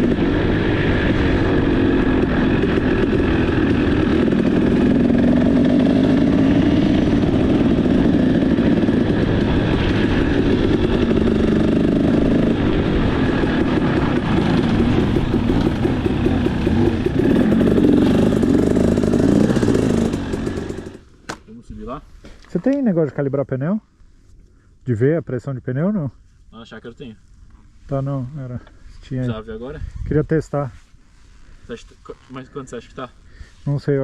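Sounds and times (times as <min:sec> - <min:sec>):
dirt bike engine revving: 0:00.0 - 0:21.1.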